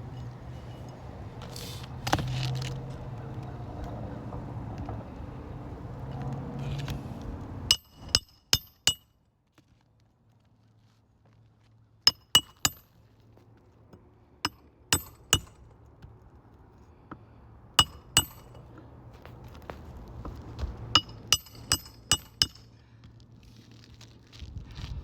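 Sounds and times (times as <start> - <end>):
hammer striking metal: 7.7 - 9.1, 12.1 - 12.9, 14.5 - 15.6, 17.8 - 18.6, 21.0 - 22.7.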